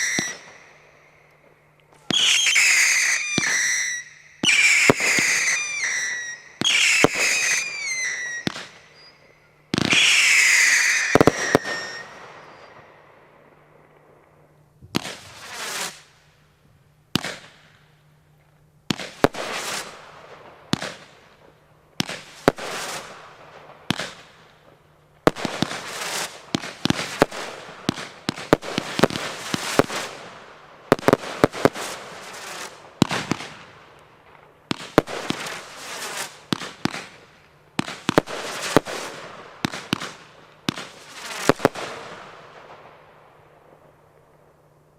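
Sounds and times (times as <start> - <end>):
firework bangs: 0.0 - 0.8, 2.0 - 12.9, 14.9 - 16.0, 17.1 - 17.7, 18.9 - 21.2, 25.3 - 33.8, 34.6 - 44.3
crackling hissing firework tails: 0.0 - 44.6.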